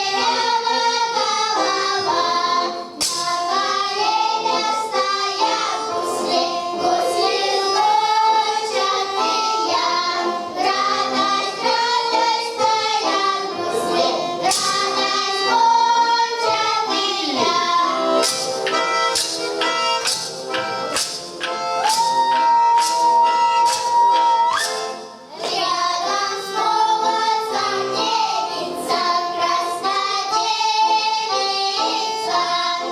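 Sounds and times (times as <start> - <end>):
instrumental accompaniment: 0.0 - 32.9
voices singing folk song: 0.0 - 32.9
sharp percussion strikes: 3.0 - 3.8, 14.4 - 15.2, 18.2 - 25.7.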